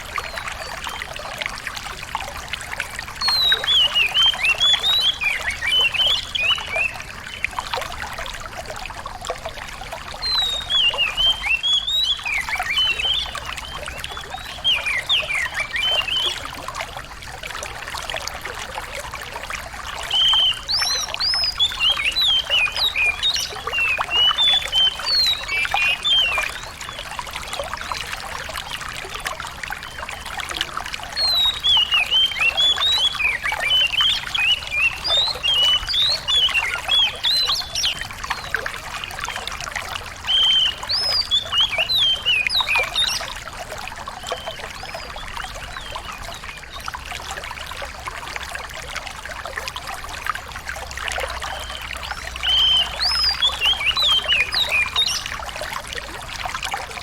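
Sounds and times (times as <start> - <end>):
trickling water: 0.0 - 57.0
songbird chirping and trilling: 3.2 - 7.5, 10.2 - 16.4, 20.0 - 28.0, 31.2 - 39.4, 40.2 - 43.4, 51.4 - 55.4.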